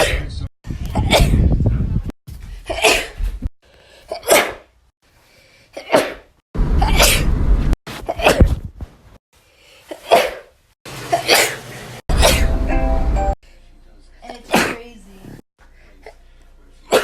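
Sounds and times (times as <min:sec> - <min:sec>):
person sneezing: 0:02.7 - 0:03.2, 0:04.1 - 0:04.7, 0:05.8 - 0:07.3, 0:09.9 - 0:10.5, 0:11.1 - 0:12.5, 0:14.5 - 0:14.8.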